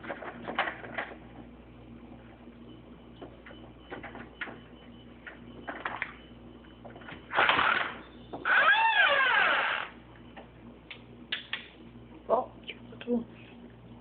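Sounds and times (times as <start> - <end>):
door creaking open: 7.2 - 10.0.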